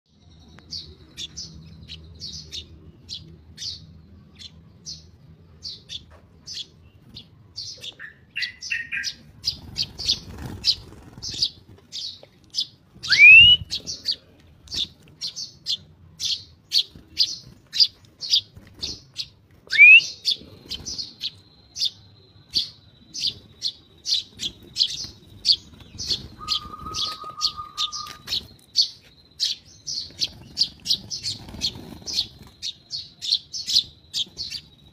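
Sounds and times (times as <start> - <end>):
sparrow chirping: 0.1 - 34.9
loud rising whistles: 13.1 - 13.7.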